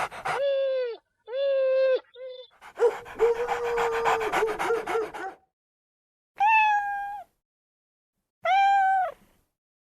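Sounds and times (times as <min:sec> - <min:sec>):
cat meowing: 0:06.4 - 0:07.3, 0:08.4 - 0:09.2.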